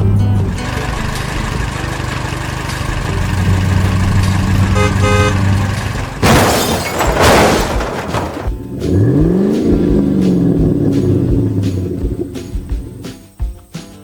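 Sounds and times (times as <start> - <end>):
truck engine humming: 0.0 - 14.0
short horn beeps: 4.7 - 5.4
loud crashing noises: 5.7 - 13.0.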